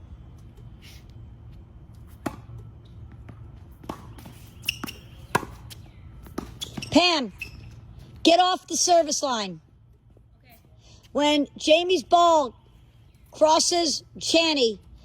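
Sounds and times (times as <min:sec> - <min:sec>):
tennis ball pocks: 0:03.2 - 0:06.9.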